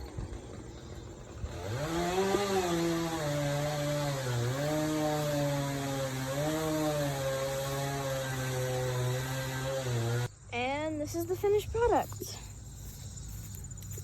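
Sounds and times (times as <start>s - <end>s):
chainsaw engine revving: 0.0s - 10.3s.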